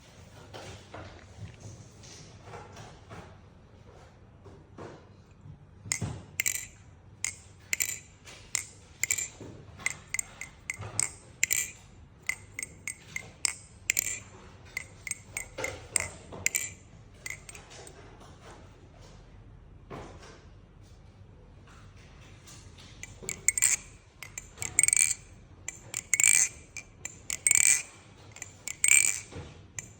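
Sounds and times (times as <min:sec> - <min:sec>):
butterfly knife clicking and clinking: 0:05.9 - 0:17.8, 0:23.0 - 0:29.9.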